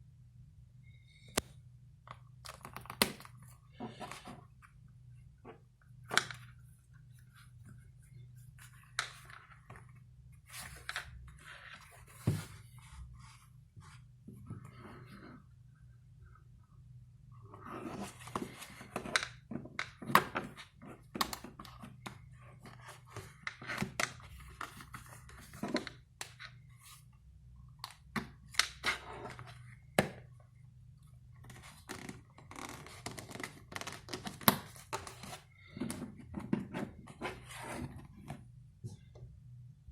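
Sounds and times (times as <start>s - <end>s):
rustling and scraping: 3.5s - 4.8s.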